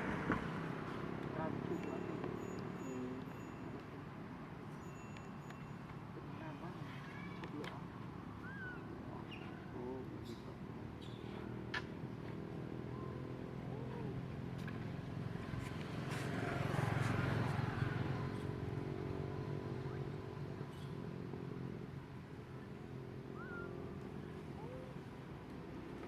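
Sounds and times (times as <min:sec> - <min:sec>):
vehicle engine passing by: 0:15.1 - 0:20.5.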